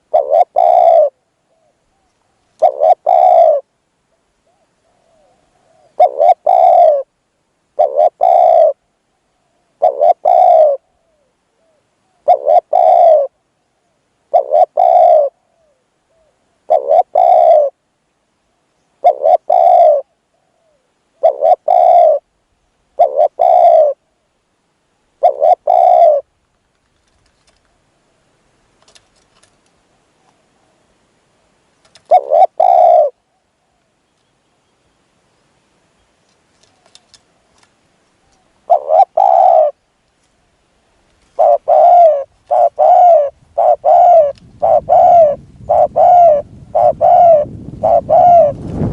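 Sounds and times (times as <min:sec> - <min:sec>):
dove cooing: 0:00.0 - 0:07.1, 0:07.7 - 0:17.8, 0:19.0 - 0:22.3, 0:22.9 - 0:24.2, 0:25.2 - 0:26.3, 0:31.9 - 0:33.9, 0:38.2 - 0:39.9, 0:41.2 - 0:48.8.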